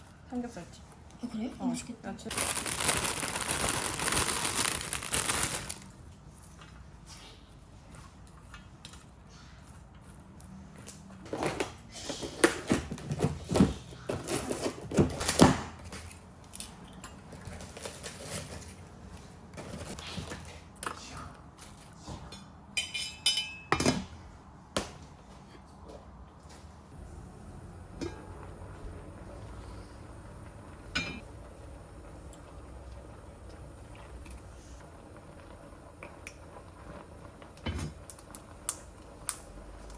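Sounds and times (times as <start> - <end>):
pots and dishes clattering: 28.0 - 28.4, 30.9 - 31.2.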